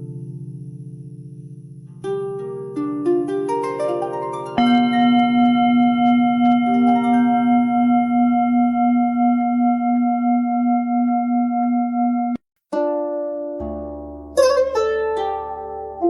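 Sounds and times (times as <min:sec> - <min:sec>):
plucked notes: 0:01.6 - 0:16.0
singing bowl ringing: 0:04.6 - 0:12.4.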